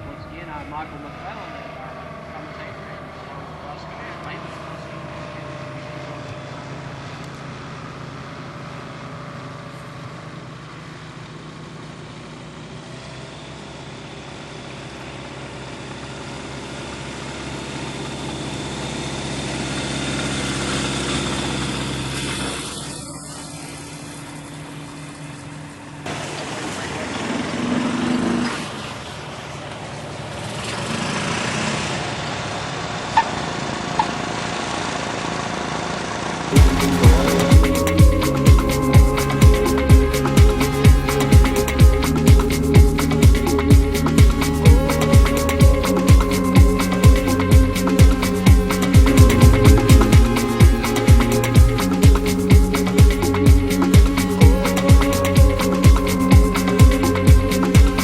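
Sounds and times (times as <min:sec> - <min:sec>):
light aircraft engine and propeller: 0:00.0 - 0:58.0.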